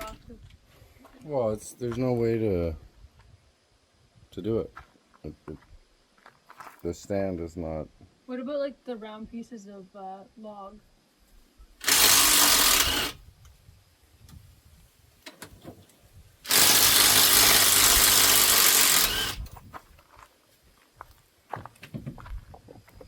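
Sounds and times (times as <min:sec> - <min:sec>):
impact wrench on bolt: 0:11.8 - 0:13.2, 0:16.5 - 0:19.5.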